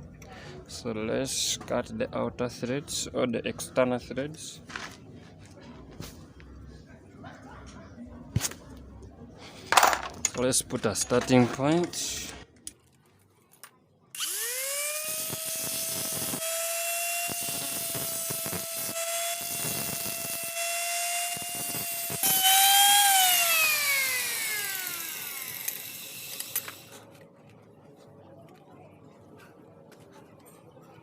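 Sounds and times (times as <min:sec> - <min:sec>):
power tool motor whining: 0:14.2 - 0:27.0.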